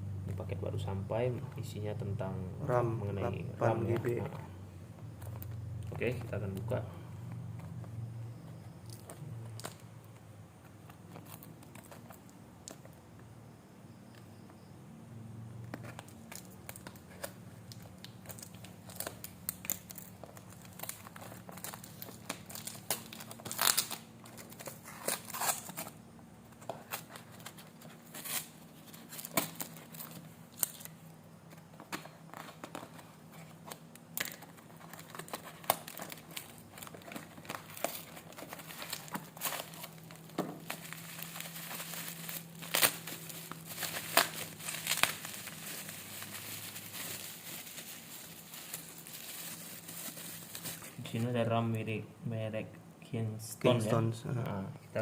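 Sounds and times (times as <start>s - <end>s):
packaging crinkling: 8.8s - 13.0s, 15.7s - 51.4s
packaging tearing: 15.8s - 26.0s, 26.6s - 51.0s.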